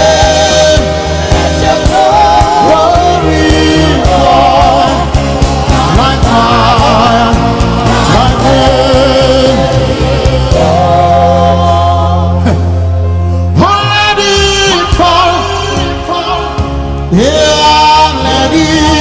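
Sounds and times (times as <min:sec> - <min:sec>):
steady beat: 0:00.0 - 0:10.9
gospel singing: 0:00.0 - 0:19.0
low bass notes: 0:00.0 - 0:19.0.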